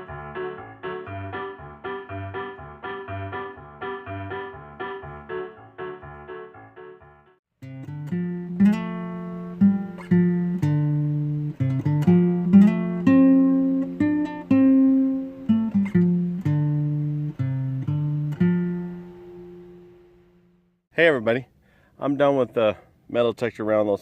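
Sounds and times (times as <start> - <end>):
acoustic guitar chords strummed: 7.6 - 20.6.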